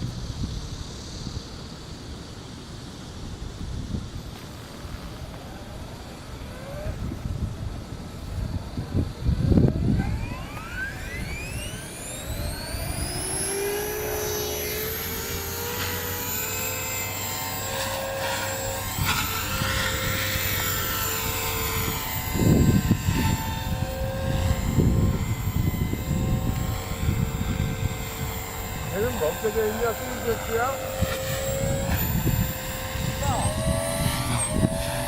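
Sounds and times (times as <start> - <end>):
wind buffeting microphone: 0.0 - 2.3, 3.1 - 35.0
rc helicopter rotor whine: 0.0 - 35.0.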